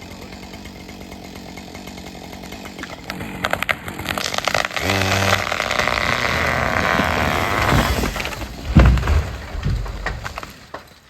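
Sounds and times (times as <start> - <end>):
chainsaw idling: 0.0 - 11.0
tree hinge wood cracking: 1.9 - 11.0
tree crashing through branches: 2.5 - 11.0.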